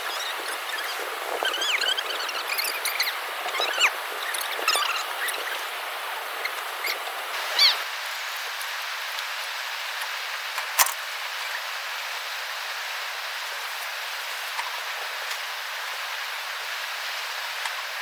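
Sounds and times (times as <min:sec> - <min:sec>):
steady hiss: 0:00.0 - 0:18.0.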